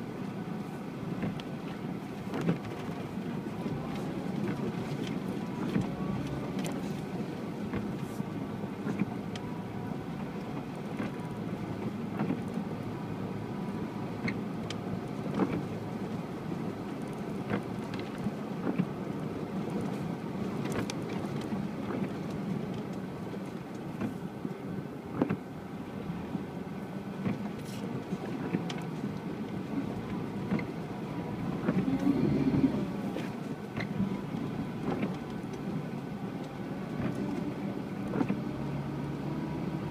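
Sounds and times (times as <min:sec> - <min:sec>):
vehicle engine running: 0:25.8 - 0:39.9.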